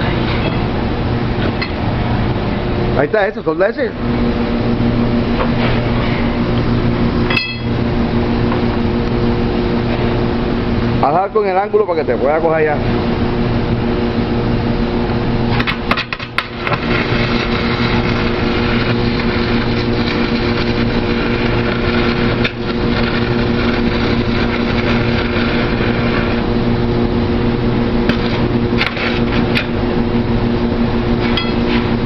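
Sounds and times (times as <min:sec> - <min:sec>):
electrical hum: 0:00.0 - 0:32.0
welding arc crackling: 0:15.5 - 0:32.0.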